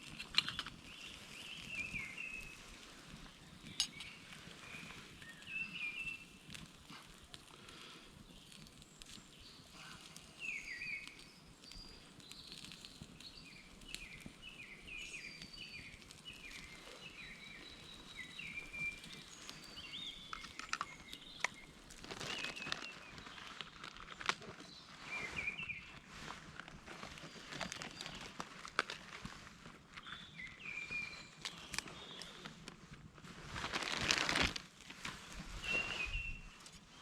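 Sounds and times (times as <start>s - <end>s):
sharp cracks and rustles: 0.0s - 25.0s, 25.9s - 37.0s
songbird chirping: 8.4s - 26.3s, 29.4s - 32.6s, 35.2s - 36.6s.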